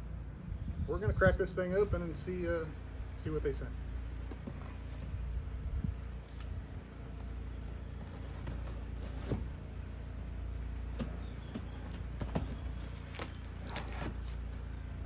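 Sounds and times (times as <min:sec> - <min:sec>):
steady low hum: 0:00.0 - 0:15.0
cardboard box being opened: 0:04.2 - 0:05.1, 0:08.0 - 0:09.5, 0:11.0 - 0:14.6.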